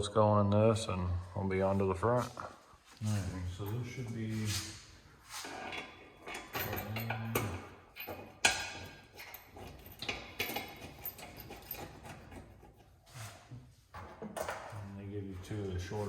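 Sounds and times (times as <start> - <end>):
metal bolts clinking: 5.6 - 12.6.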